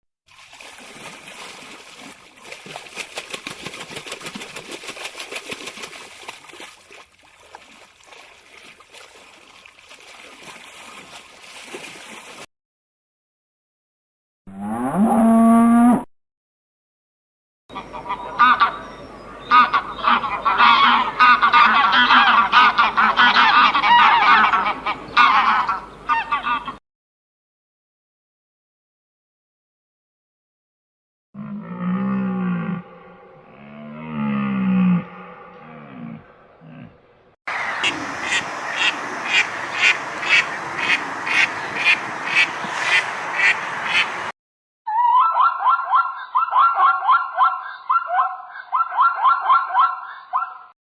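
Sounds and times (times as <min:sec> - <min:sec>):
duck quacking: 0:17.7 - 0:18.8, 0:19.5 - 0:26.8, 0:37.5 - 0:44.2
waterfowl honking: 0:17.7 - 0:26.8, 0:37.5 - 0:44.3, 0:45.0 - 0:50.6.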